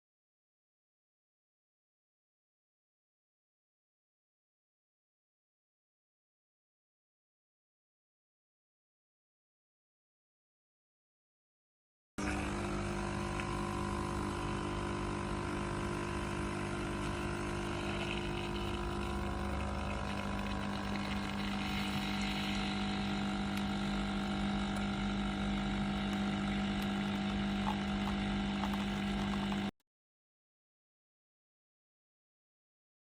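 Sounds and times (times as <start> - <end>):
espresso machine pump humming: 12.2 - 29.7.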